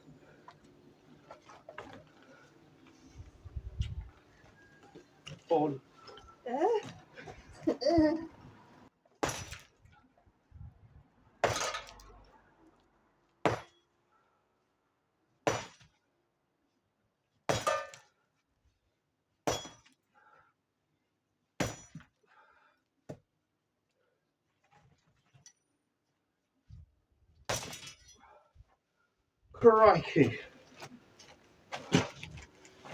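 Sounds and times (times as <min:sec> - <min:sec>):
rubble clattering: 0:30.2 - 0:32.9.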